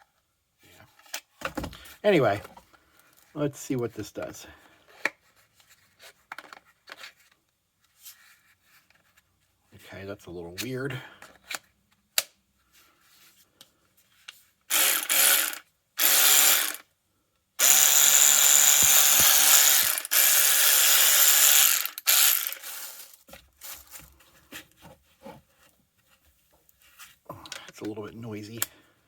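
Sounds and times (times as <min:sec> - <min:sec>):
electric ratchet wrench motor whine: 0:14.7 - 0:16.8, 0:17.6 - 0:23.1.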